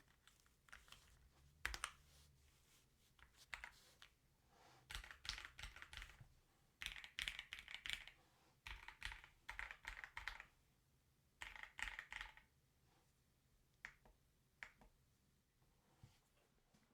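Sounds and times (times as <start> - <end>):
mechanical keyboard typing: 0.0 - 2.0, 4.9 - 6.2, 6.8 - 10.5, 11.4 - 12.5.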